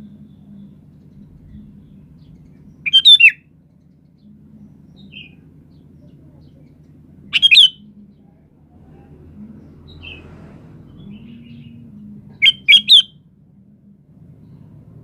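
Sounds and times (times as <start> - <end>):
bird singing warbled phrases: 0.0 - 3.5, 4.2 - 8.3, 11.0 - 13.2
faint low hum: 0.0 - 15.0.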